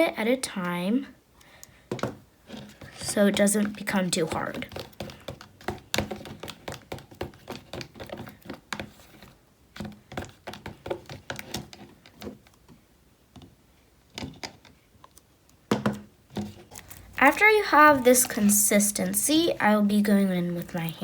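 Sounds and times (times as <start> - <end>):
fork stirring slime in a cup: 2.5 - 12.4, 16.4 - 21.0.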